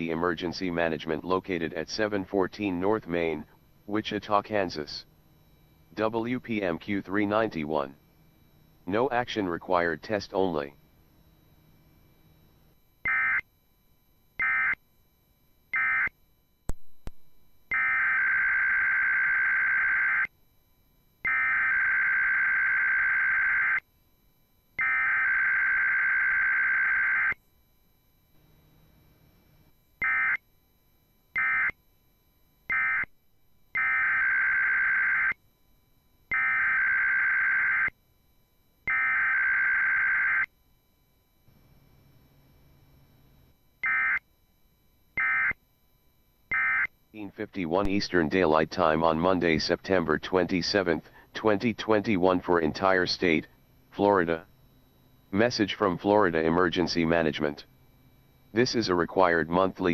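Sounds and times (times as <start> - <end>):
two-tone electronic data bursts: 13.0 - 13.5, 14.4 - 14.8, 15.7 - 16.2, 16.8 - 20.3, 21.2 - 23.8, 24.8 - 27.4, 30.0 - 30.4, 31.4 - 31.8, 32.7 - 35.4, 36.3 - 38.0, 38.9 - 40.5, 43.8 - 44.3, 45.1 - 45.6, 46.5 - 54.6
click: 16.7 - 17.2.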